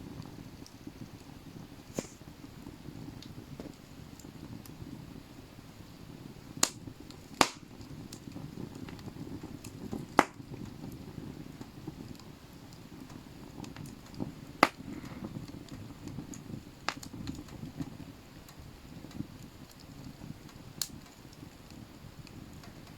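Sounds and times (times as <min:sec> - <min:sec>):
burning wood popping: 0:00.0 - 0:22.9
campfire crackling: 0:00.0 - 0:22.9
low rumble of flames: 0:00.0 - 0:22.9.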